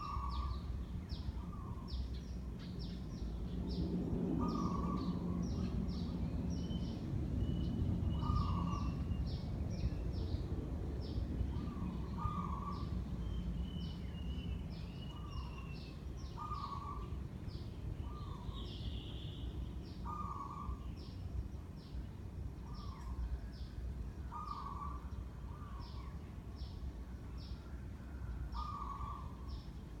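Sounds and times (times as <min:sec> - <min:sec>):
birds calling and chirping: 0:00.0 - 0:10.4, 0:11.4 - 0:21.2, 0:22.6 - 0:26.2, 0:28.5 - 0:29.8
ceiling fan rumble: 0:00.0 - 0:18.8.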